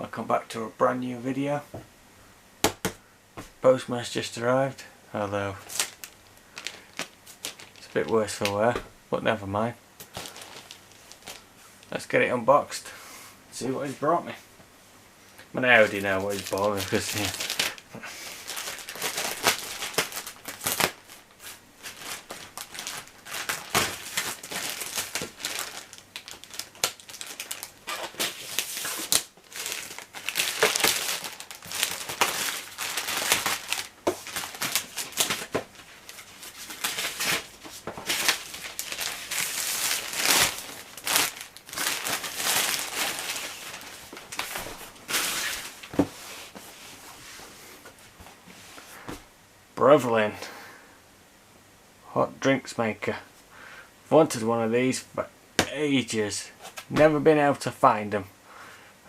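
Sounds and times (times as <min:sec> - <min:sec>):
packaging tearing and crinkling: 0:05.6 - 0:08.1, 0:10.0 - 0:11.5, 0:15.8 - 0:17.8, 0:18.4 - 0:45.9.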